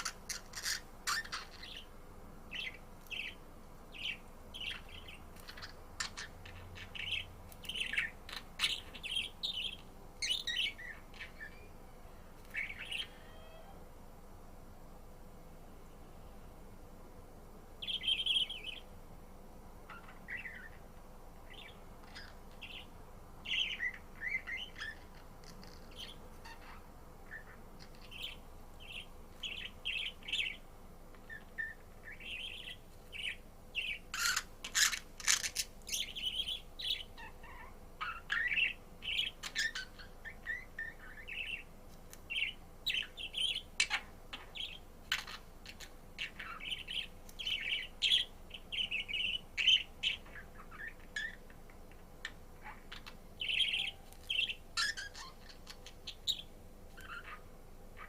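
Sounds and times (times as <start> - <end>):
budgerigar chirping and warbling: 0.0 - 1.9, 12.6 - 13.8, 19.9 - 20.8, 21.5 - 22.9, 23.5 - 30.6, 31.3 - 41.6, 42.3 - 51.5, 52.2 - 58.0.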